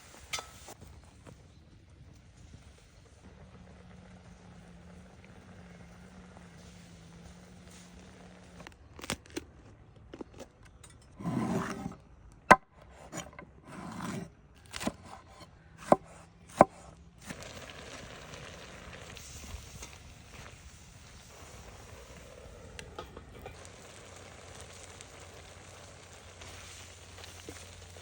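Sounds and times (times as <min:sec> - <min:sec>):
utensils scraping: 0:10.9 - 0:12.0.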